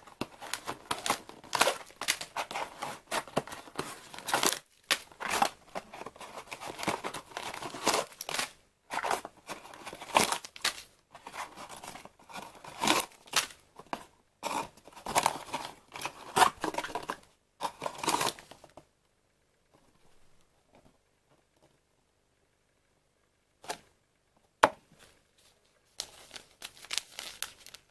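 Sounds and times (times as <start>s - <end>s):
packaging rustling and tearing: 0.0s - 13.6s, 14.4s - 18.6s, 26.0s - 27.9s.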